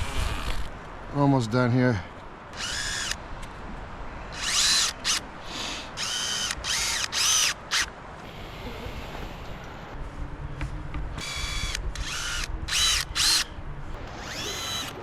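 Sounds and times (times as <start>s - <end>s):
power drill spinning up and down: 0.0s - 0.7s, 2.6s - 3.2s, 4.3s - 8.5s, 11.2s - 15.0s.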